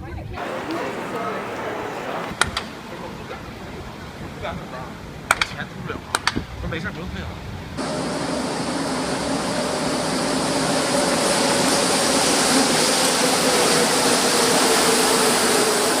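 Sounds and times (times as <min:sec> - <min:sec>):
faint hum dropping in pitch: 0:00.4 - 0:02.4.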